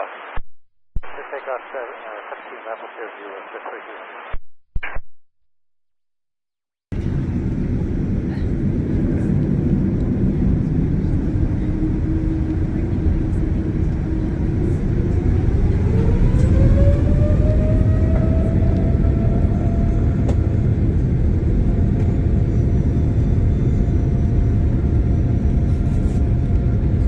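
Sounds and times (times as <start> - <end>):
jet engine whine rising: 7.0 - 27.0.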